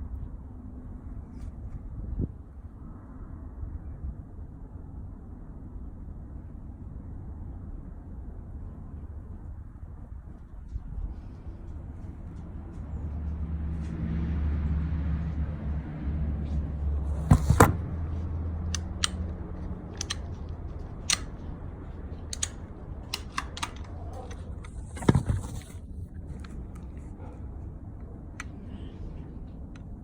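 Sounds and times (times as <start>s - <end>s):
steady low hum: 0.0s - 30.0s
handgun metallic clicks: 18.7s - 21.6s, 22.2s - 25.0s.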